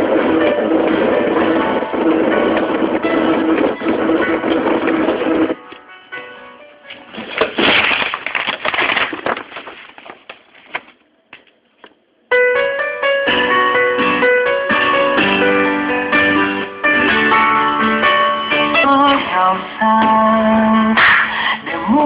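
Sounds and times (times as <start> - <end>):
piano and electric keyboard: 0.0 - 7.4, 12.3 - 20.5.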